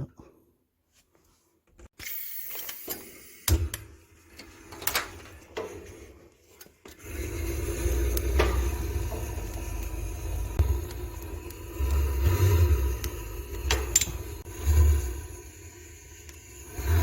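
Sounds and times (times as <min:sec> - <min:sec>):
steady low rumble: 0:07.1 - 0:16.8
metal clicks and knocks of stove: 0:13.0 - 0:14.4.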